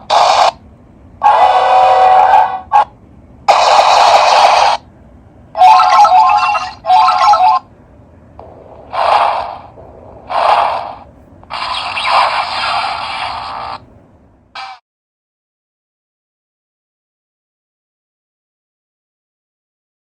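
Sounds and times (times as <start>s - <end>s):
alarm clock sound effects: 5.6s - 7.6s.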